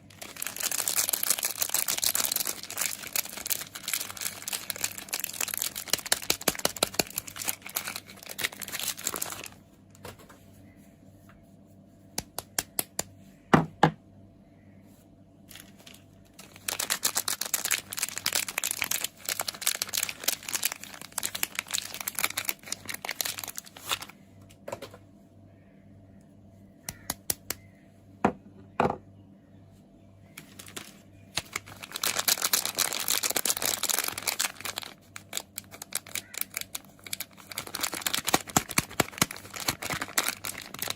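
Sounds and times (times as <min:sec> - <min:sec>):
packaging crinkling and tearing: 0:00.0 - 0:09.6, 0:15.5 - 0:24.2, 0:30.4 - 0:40.9.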